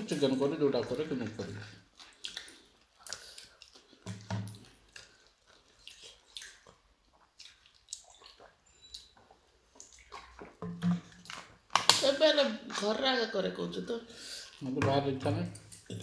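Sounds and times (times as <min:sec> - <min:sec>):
wet chewing sounds: 0:00.9 - 0:13.3.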